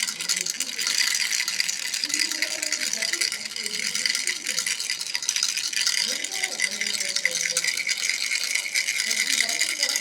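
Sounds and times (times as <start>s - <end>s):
toy rattle shaken: 0.0s - 10.0s.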